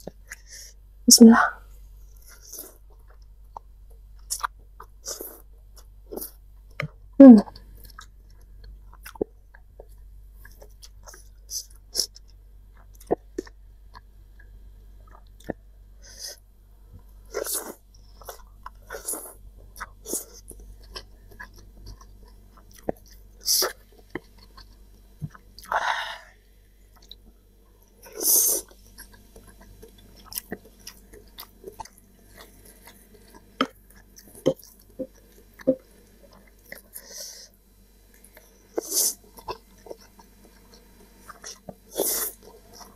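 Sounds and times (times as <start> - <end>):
chewing noodles: 7.5 - 16.4, 17.2 - 25.7, 28.0 - 37.5, 38.1 - 42.9.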